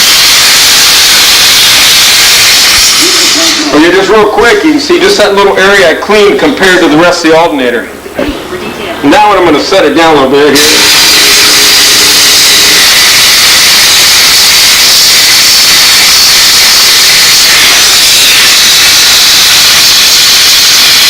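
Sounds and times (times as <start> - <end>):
steam cleaner hissing: 2.4 - 3.7, 10.6 - 12.2.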